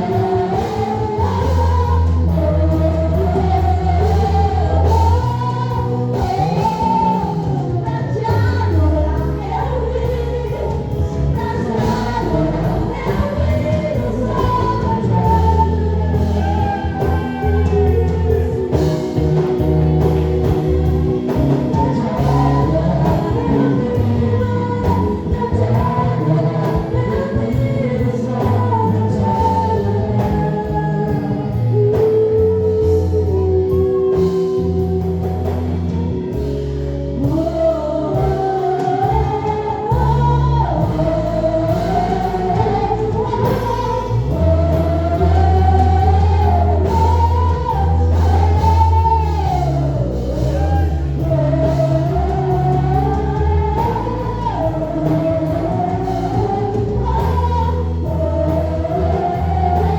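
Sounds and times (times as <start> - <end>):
voices singing: 0.0 - 36.4, 37.2 - 59.9
band playing: 0.0 - 59.9.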